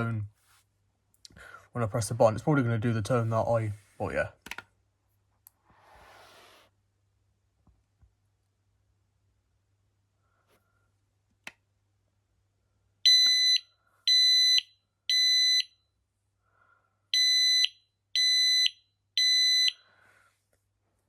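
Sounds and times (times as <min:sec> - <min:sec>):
smoke alarm beeping: 0:13.0 - 0:15.8, 0:17.1 - 0:19.9.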